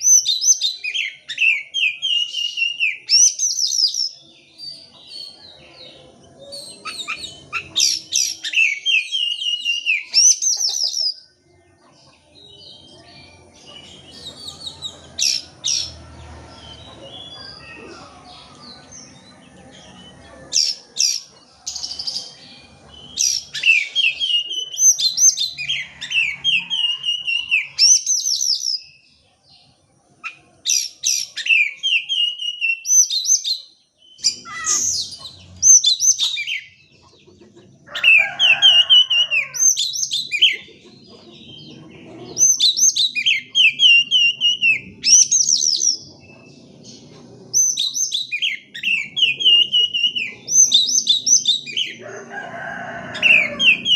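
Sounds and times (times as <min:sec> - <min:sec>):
bird singing whistles: 0:30.7 - 0:33.6, 0:42.6 - 0:45.8, 0:47.6 - 0:51.7.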